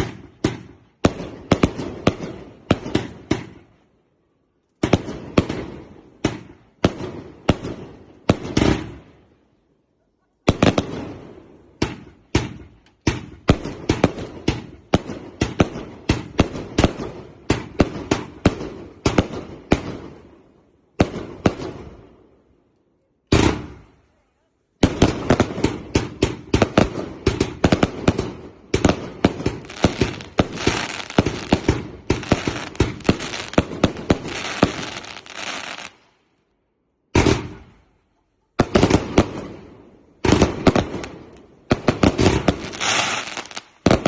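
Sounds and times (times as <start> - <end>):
fireworks echoing bangs: 0.0 - 3.7, 4.8 - 9.1, 10.5 - 22.2, 23.3 - 23.9, 24.8 - 36.0, 37.1 - 37.8, 38.6 - 44.0.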